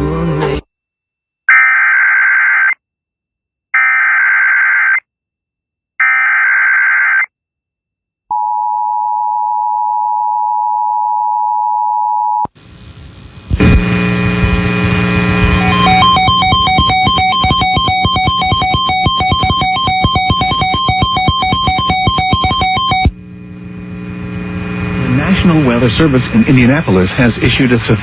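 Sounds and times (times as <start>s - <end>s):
loud music: 0.0s - 0.7s, 15.7s - 23.0s
two-tone attention signal: 15.6s - 23.1s
warbling digital data tones: 15.6s - 23.1s.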